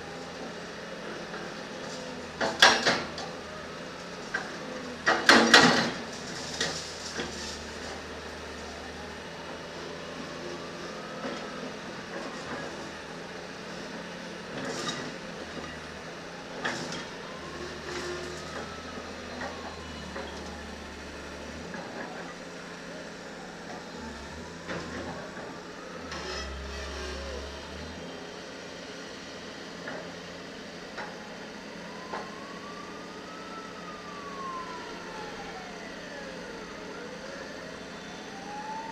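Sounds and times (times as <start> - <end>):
diesel engine running: 5.9 - 31.0
faint whine rising and falling: 25.8 - 28.0.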